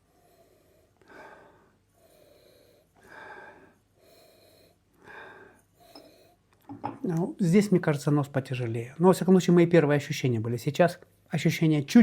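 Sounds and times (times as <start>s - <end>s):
soft breathing: 0.0s - 6.6s.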